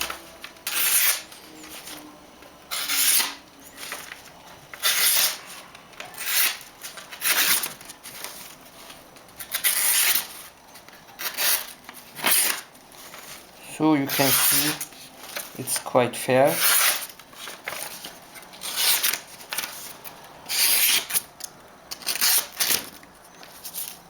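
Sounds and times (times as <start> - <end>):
knife slicing through paper: 0.7 - 1.3.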